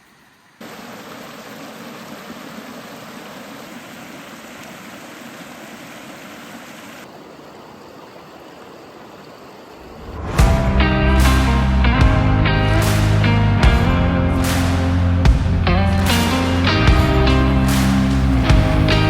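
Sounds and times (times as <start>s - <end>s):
steady rushing noise: 9.8s - 19.0s.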